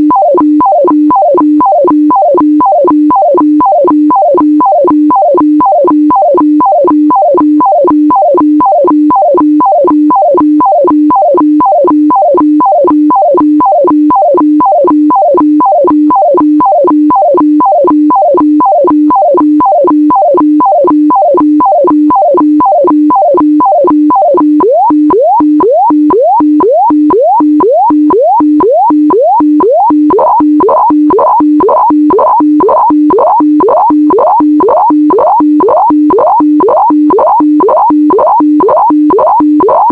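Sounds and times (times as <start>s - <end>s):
radiofax electronic warble: 23.6s - 39.9s.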